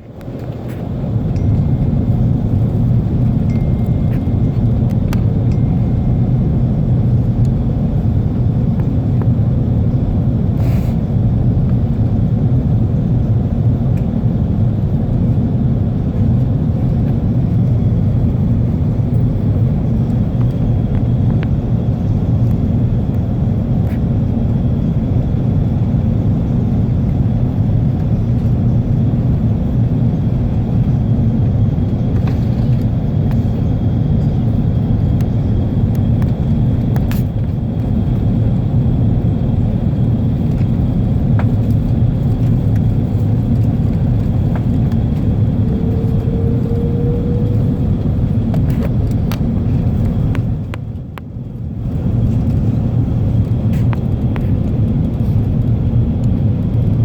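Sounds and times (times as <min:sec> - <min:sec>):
airflow over fuselage: 0:00.0 - 0:57.0
jet engines rumbling: 0:00.0 - 0:57.0
faint high steady tone: 0:03.4 - 0:04.7.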